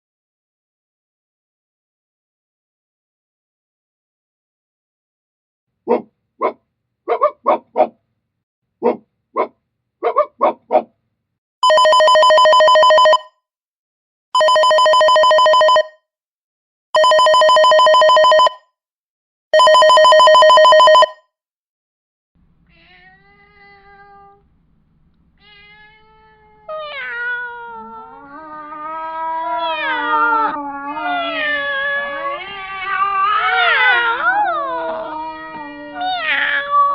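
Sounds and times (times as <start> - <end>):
dog barking: 5.9 - 8.0, 8.8 - 11.0
telephone ringing: 11.6 - 13.3, 14.4 - 16.0, 17.0 - 18.6, 19.6 - 21.2
cat meowing: 22.7 - 24.4, 25.4 - 36.9.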